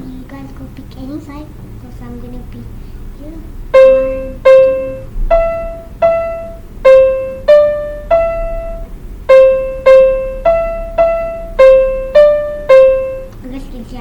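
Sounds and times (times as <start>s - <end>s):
keyboard piano melody: 3.7s - 13.4s.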